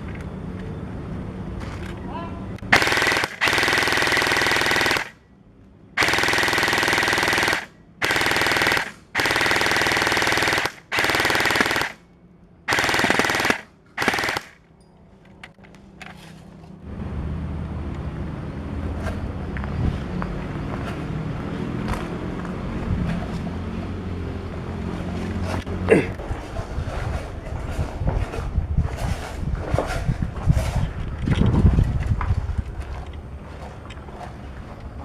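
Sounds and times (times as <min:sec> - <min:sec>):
airsoft guns firing full auto: 0:02.7 - 0:05.2, 0:06.0 - 0:12.0, 0:12.7 - 0:14.6.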